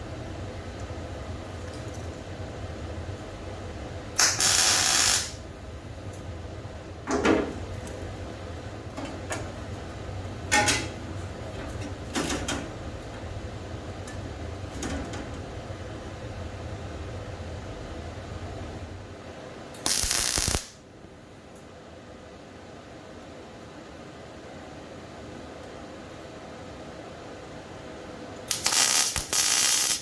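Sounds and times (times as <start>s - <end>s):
steady low hum: 0.0s - 30.0s
loud hiss: 4.2s - 5.4s, 19.9s - 20.8s, 28.5s - 30.0s.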